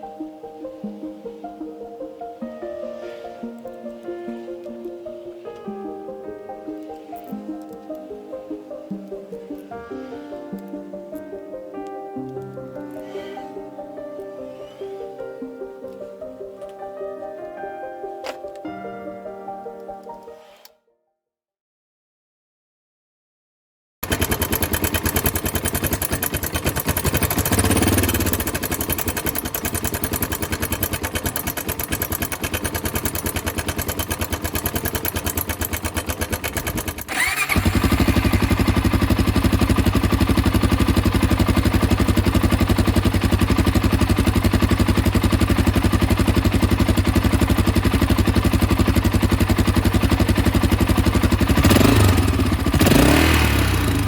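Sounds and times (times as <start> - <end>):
motorcycle engine idling: 24.0 - 54.0.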